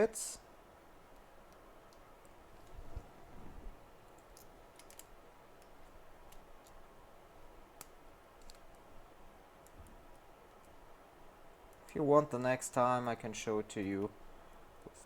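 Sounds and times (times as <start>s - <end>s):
small tools clicking: 4.2s - 6.8s.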